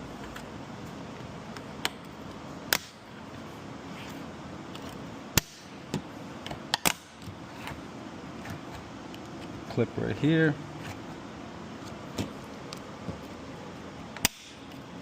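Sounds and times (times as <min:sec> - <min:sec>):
steady background hiss: 0:00.0 - 0:15.0.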